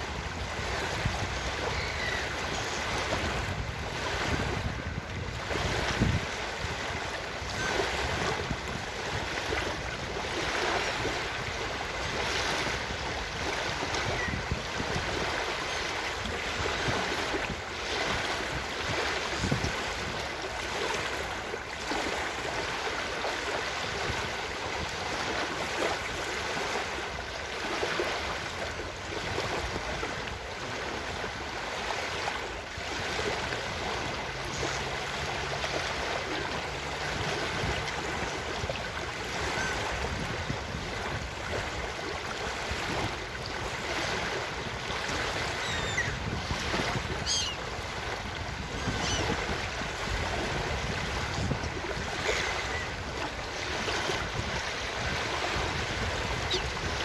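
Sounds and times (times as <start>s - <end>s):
ocean surf washing onto beach: 0.0s - 57.0s
gulls calling: 1.3s - 3.2s, 39.3s - 40.0s, 45.3s - 47.8s, 48.7s - 49.6s, 52.1s - 53.7s, 56.3s - 56.9s.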